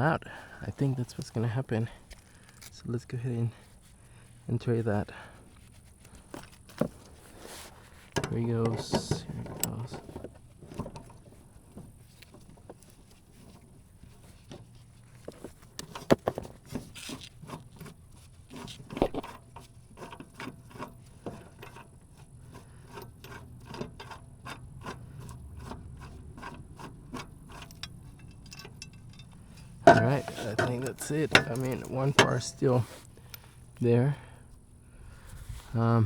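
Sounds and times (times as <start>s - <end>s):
sharp metal knocks: 29.8s - 32.6s.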